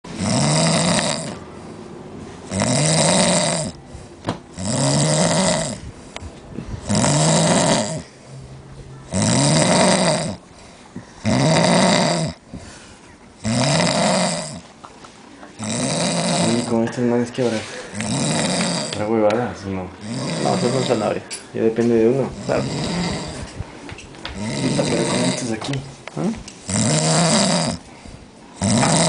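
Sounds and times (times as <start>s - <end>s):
loud snoring: 0.1s - 1.4s, 2.5s - 3.8s, 4.5s - 5.8s, 6.8s - 8.2s, 9.1s - 10.5s, 11.2s - 12.4s, 13.4s - 14.7s, 15.6s - 16.8s, 17.8s - 19.1s, 20.0s - 21.2s, 22.3s - 23.6s, 24.3s - 25.8s, 26.6s - 27.9s, 28.6s - 29.0s
quiet breathing: 10.4s - 11.3s, 12.4s - 13.2s, 17.4s - 18.8s, 27.8s - 28.6s.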